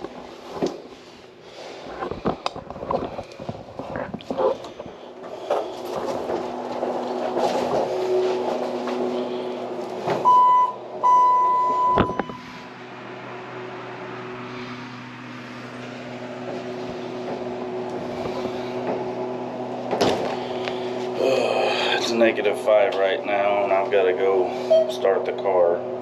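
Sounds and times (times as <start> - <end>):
machine hum with fan rush: 0.0 - 26.0
electronic beeps: 10.2 - 12.4.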